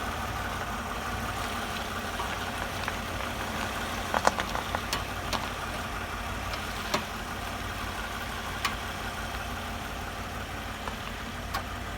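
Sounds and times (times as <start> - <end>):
vehicle running hum: 0.0 - 11.9
suspension clicks and cracks: 1.2 - 9.5, 10.4 - 11.9.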